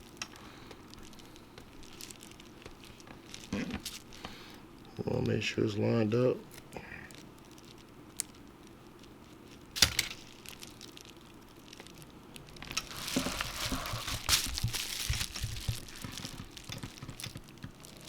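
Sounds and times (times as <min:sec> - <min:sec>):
rustling and crackling: 0:00.0 - 0:05.4, 0:07.1 - 0:18.0.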